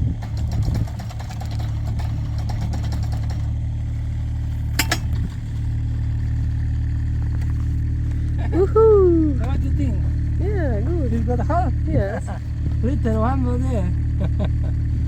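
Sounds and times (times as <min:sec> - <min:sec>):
hydraulic auger drilling: 0:00.0 - 0:08.5
diesel engine running: 0:00.0 - 0:15.0
light clattering: 0:04.6 - 0:05.6.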